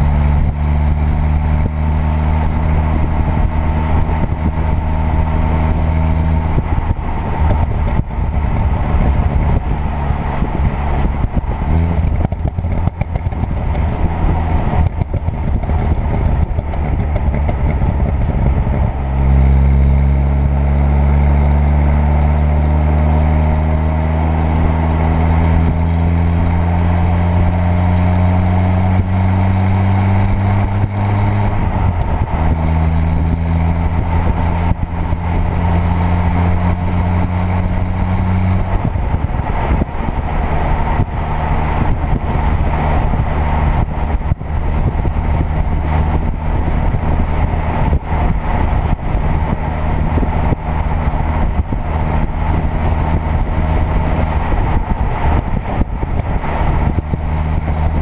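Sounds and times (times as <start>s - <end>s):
car engine accelerating: 0.0s - 58.0s
engine ticks: 11.2s - 19.0s.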